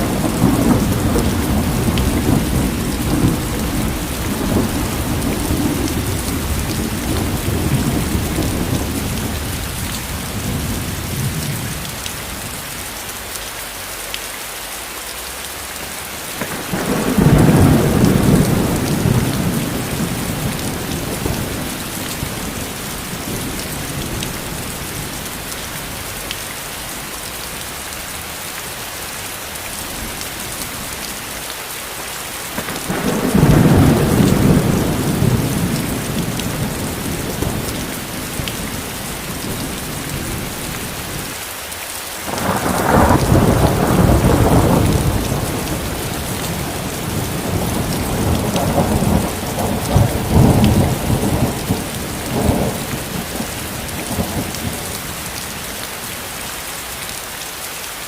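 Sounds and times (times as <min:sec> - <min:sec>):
rolling thunder: 0:00.0 - 0:12.7, 0:16.2 - 0:26.9, 0:32.5 - 0:41.3, 0:42.3 - 0:55.6
steady rain: 0:00.0 - 0:58.0.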